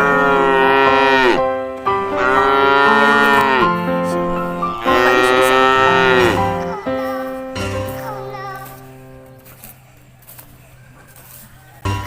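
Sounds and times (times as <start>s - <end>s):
cow mooing: 0.0s - 1.4s, 2.0s - 7.2s
background music: 0.0s - 9.8s, 11.8s - 12.0s.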